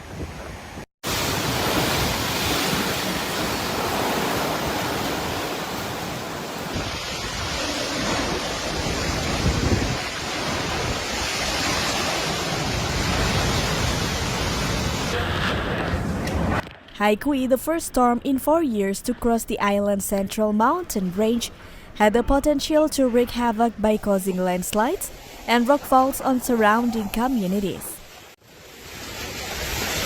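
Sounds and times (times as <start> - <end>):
gusting wind: 0.0 - 17.0, 21.4 - 30.0
rushing water: 0.4 - 15.2, 25.1 - 30.0.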